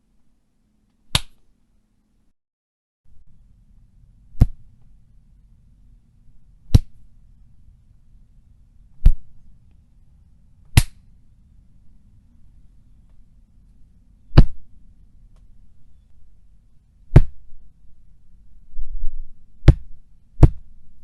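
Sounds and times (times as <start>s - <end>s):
faint low hum: 0.0s - 2.4s, 3.1s - 21.0s
punch hits: 14.4s - 14.6s, 17.1s - 17.4s, 19.6s - 20.6s.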